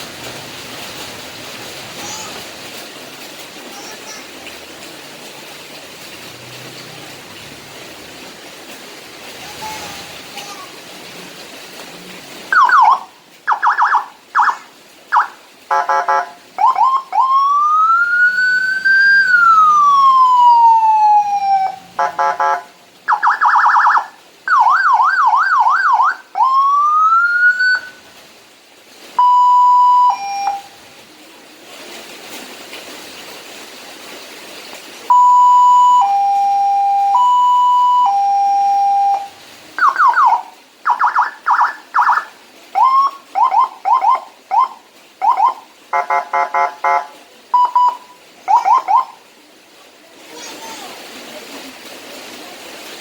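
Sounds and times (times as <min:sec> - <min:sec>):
electronic siren cycling tones: 0:12.5 - 0:28.0, 0:29.2 - 0:30.7, 0:35.1 - 0:47.0, 0:47.6 - 0:49.2.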